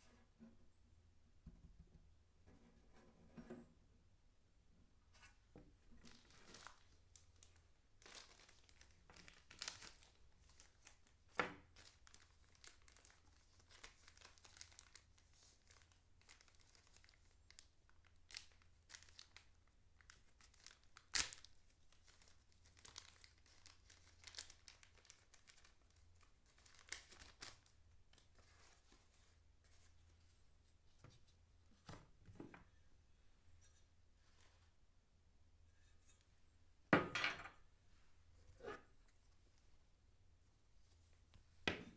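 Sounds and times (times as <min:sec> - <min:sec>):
wrapping crinkling and tearing: 0:06.0 - 0:29.8.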